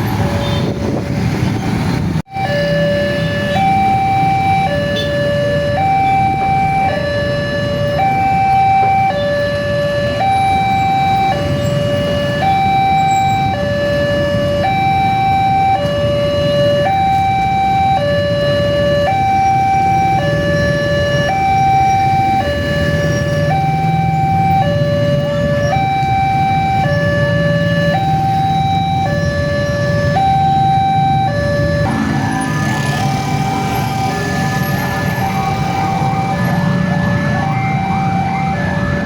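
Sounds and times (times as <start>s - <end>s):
level crossing two-tone alarm: 2.3s - 39.0s.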